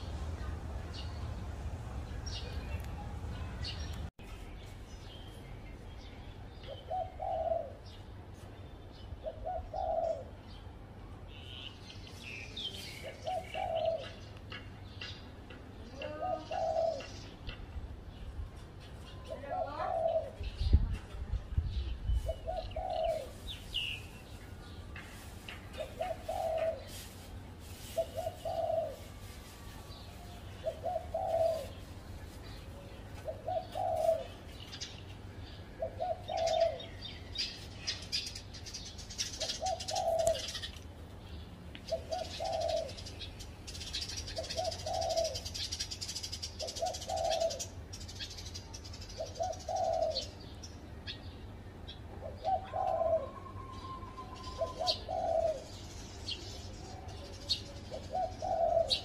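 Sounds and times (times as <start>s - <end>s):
small birds chirping: 0.0s - 59.0s
dove cooing: 6.7s - 7.9s, 9.2s - 10.4s, 13.0s - 14.2s, 16.0s - 17.2s, 19.3s - 20.5s, 22.2s - 23.6s, 25.8s - 27.2s, 27.8s - 29.2s, 30.6s - 31.9s, 32.7s - 34.4s, 35.8s - 37.1s, 39.3s - 40.7s, 41.9s - 43.2s, 43.8s - 47.8s, 49.2s - 50.4s, 52.2s - 55.8s, 57.0s - 59.0s.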